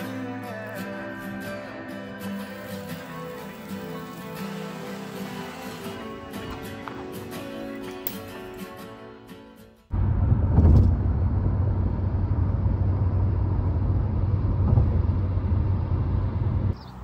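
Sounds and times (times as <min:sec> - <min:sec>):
steady low rumble: 0:09.9 - 0:16.8.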